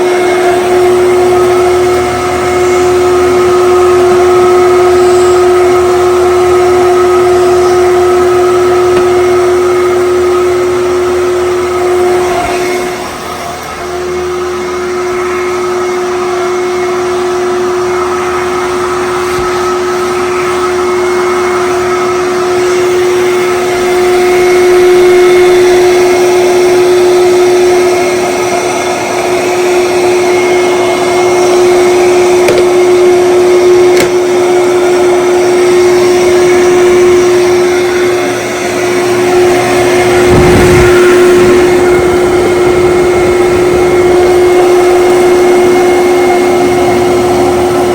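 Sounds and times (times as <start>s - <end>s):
vacuum cleaner motor whine: 0.0s - 47.9s
low rumble: 40.1s - 45.4s.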